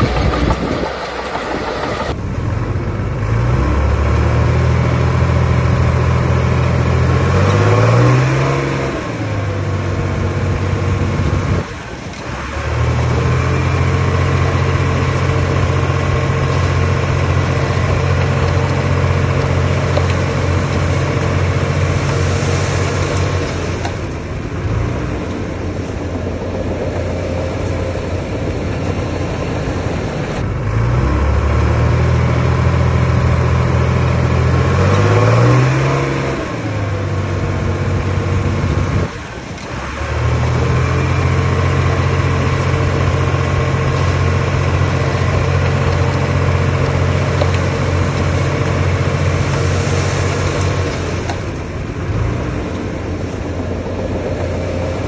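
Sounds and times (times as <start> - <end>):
diesel engine of earthmoving machinery: 0.0 - 55.0.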